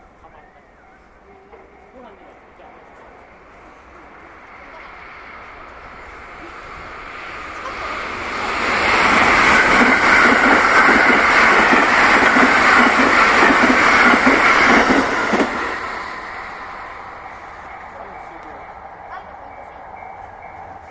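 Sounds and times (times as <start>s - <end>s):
train passing at speed: 0.0s - 20.9s
wheels clacking over rail joints: 4.5s - 17.0s.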